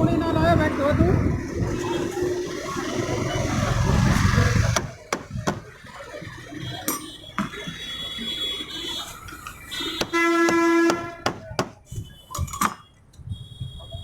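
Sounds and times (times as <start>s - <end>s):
low engine rumble: 0.0s - 6.4s.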